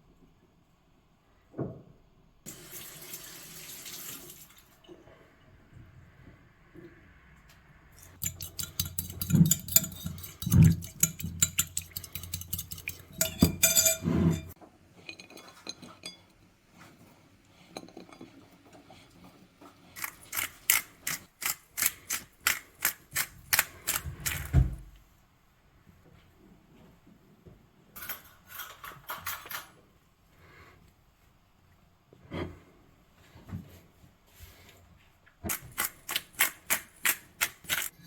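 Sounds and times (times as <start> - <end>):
cutlery and dishes clinking: 8.0 - 16.4, 28.0 - 29.8.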